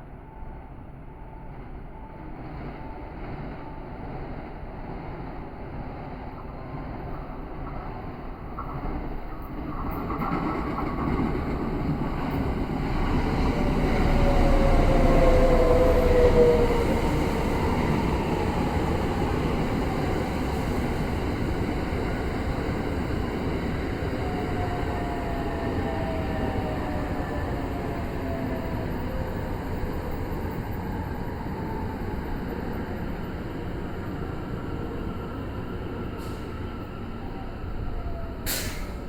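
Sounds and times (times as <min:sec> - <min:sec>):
electric train rumbling: 0:00.0 - 0:39.0
train falling whine: 0:11.2 - 0:39.0.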